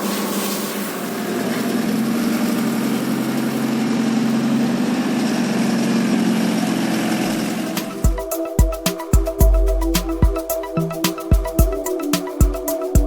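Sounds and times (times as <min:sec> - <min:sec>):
diesel engine running: 0:01.2 - 0:08.0.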